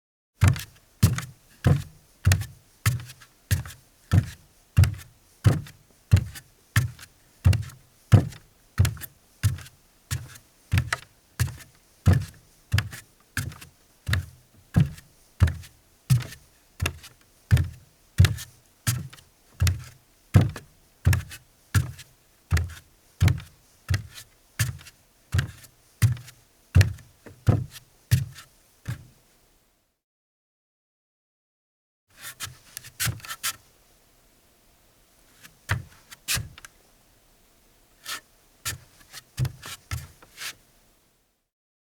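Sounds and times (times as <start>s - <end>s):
barefoot footsteps on a deck: 0.4s - 29.1s, 35.4s - 36.7s, 38.1s - 40.6s.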